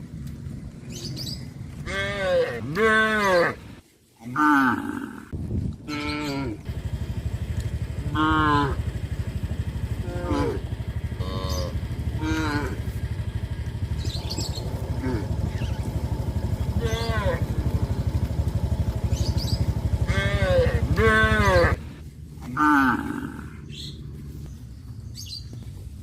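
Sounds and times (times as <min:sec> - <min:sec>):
small engine idling: 0:00.0 - 0:03.0, 0:06.6 - 0:22.7
cattle mooing: 0:01.8 - 0:03.6, 0:04.2 - 0:05.3, 0:05.9 - 0:06.7, 0:08.0 - 0:08.9, 0:09.9 - 0:13.1, 0:14.8 - 0:15.5, 0:16.7 - 0:17.8, 0:20.0 - 0:23.6.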